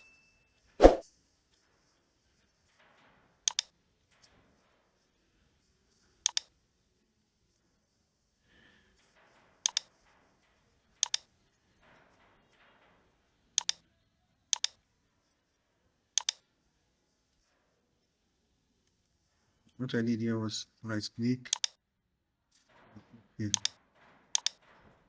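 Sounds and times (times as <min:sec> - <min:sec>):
faint scuffing: 0:00.8 - 0:01.0
computer mouse clicking: 0:03.5 - 0:03.7, 0:06.2 - 0:06.5, 0:09.7 - 0:09.9, 0:11.0 - 0:11.3, 0:13.6 - 0:13.8, 0:14.5 - 0:14.8, 0:16.2 - 0:16.4, 0:21.5 - 0:21.8, 0:23.5 - 0:23.7, 0:24.4 - 0:24.6.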